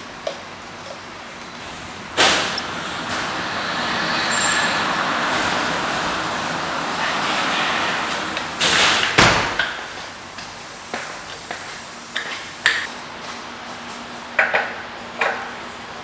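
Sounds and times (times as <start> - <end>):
metal clanks: 2.2 - 2.9.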